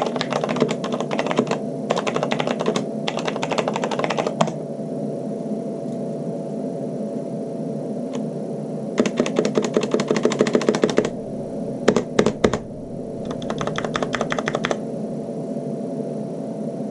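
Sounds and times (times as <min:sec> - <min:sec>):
mechanical keyboard typing: 0:00.0 - 0:04.6, 0:09.0 - 0:11.2, 0:11.9 - 0:12.6, 0:13.2 - 0:14.8
low background noise: 0:00.0 - 0:16.9.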